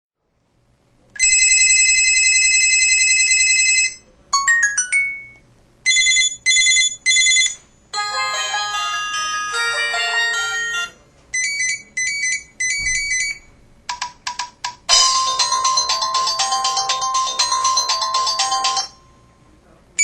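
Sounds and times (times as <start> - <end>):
ringtone melody: 4.4 - 5.4, 8.0 - 11.0, 14.9 - 19.2.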